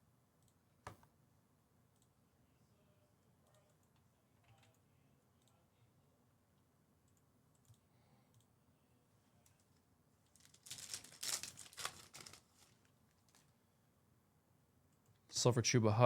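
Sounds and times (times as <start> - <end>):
faint clicks: 7.1 - 8.5
card packs crinkling and rustling: 10.3 - 13.5.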